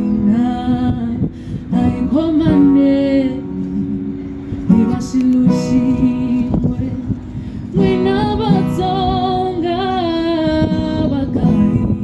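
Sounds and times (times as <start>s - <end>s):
woman singing: 0.0s - 12.0s.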